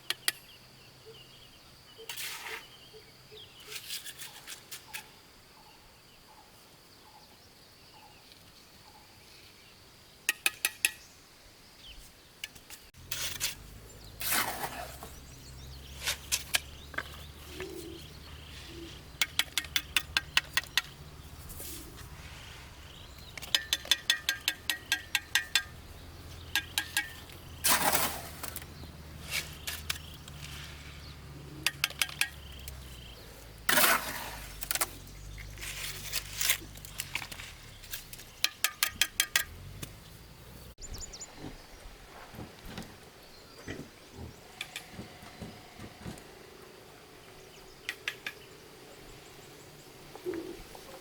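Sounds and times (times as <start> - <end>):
rough scraping: 12.9 - 43.0.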